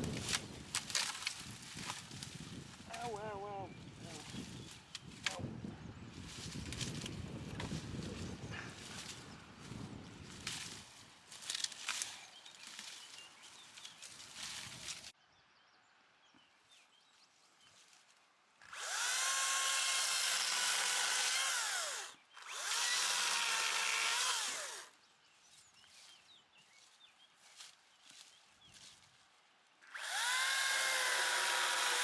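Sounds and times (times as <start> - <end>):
rustling and crackling: 6.2 - 15.2
power tool engine revving: 18.6 - 24.9, 29.9 - 32.0.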